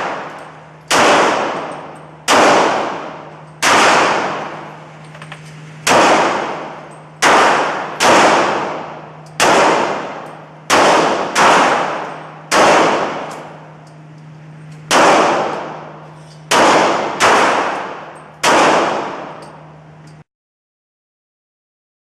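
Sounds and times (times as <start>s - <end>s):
gunshots with echo: 0.0s - 4.8s, 5.8s - 13.6s, 14.9s - 19.4s.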